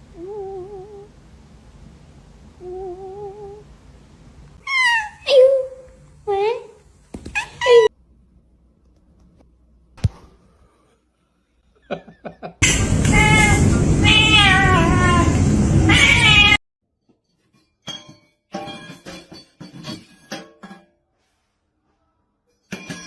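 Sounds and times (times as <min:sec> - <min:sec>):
cat meowing and yowling: 0:04.6 - 0:05.7, 0:13.1 - 0:16.6
loud background noise: 0:12.6 - 0:16.6.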